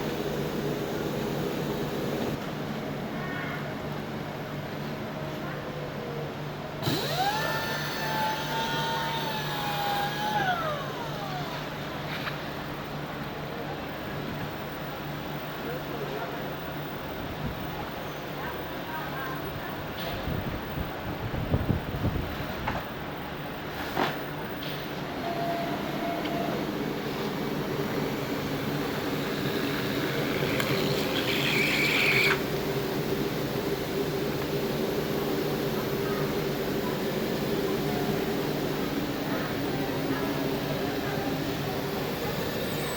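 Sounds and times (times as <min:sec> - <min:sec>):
high-pitched whir: 0:06.8 - 0:11.7, 0:27.9 - 0:32.4
machine motor whining: 0:06.8 - 0:12.3, 0:25.1 - 0:42.9.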